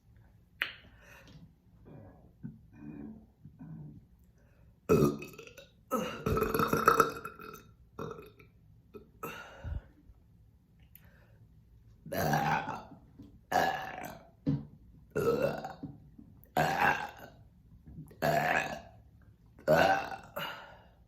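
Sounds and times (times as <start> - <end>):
woman burping loudly: 4.9 - 9.6, 12.1 - 14.3, 15.2 - 15.9, 16.5 - 17.4, 18.2 - 19.0, 19.6 - 21.0.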